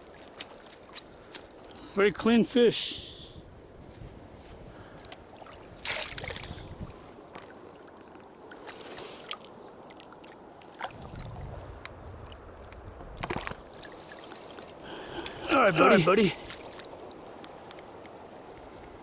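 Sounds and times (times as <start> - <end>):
river water splashing: 0.0 - 2.8, 4.5 - 19.0
flowing river: 0.0 - 19.0.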